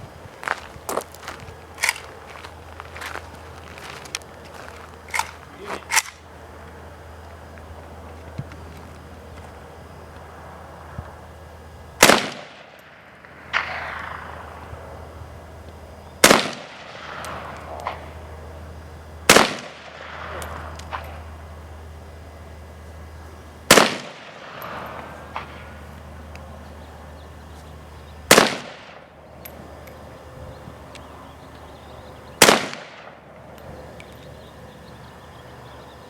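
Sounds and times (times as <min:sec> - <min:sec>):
rifle shots ringing: 0:05.0 - 0:06.3, 0:12.0 - 0:14.7, 0:16.2 - 0:18.2, 0:19.3 - 0:21.3, 0:23.7 - 0:25.9, 0:28.3 - 0:30.1, 0:32.4 - 0:33.5.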